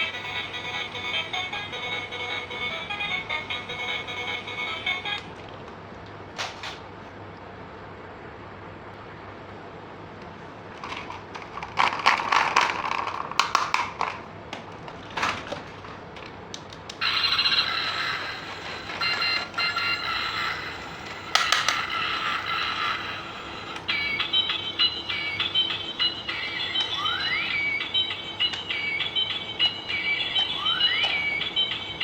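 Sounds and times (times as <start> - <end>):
plastic toy parts clicking: 10.8 - 14.2, 21.3 - 22.0
electronic beeping tune: 17.0 - 21.1, 23.9 - 32.0.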